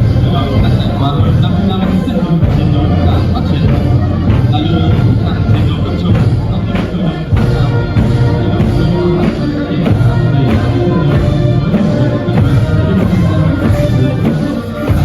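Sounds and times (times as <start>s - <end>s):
soldiers singing a marching song: 0.0s - 15.0s
steady marching beat: 0.0s - 15.0s.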